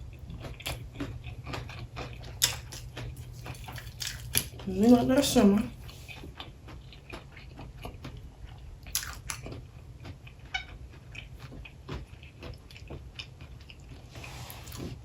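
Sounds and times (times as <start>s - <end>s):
crunchy chewing: 0.0s - 15.0s
faint low hum: 0.0s - 15.0s.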